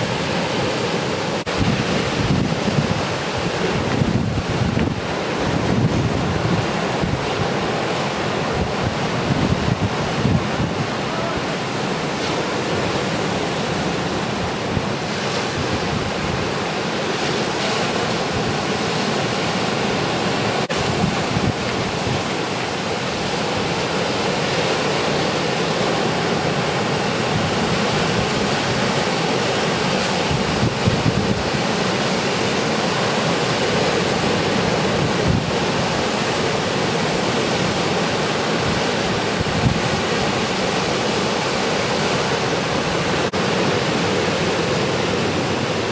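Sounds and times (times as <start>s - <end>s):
ocean surf breaking: 0.0s - 45.9s
wind buffeting microphone: 1.4s - 13.2s, 13.8s - 16.7s, 20.7s - 23.8s, 26.2s - 32.0s, 33.9s - 45.9s.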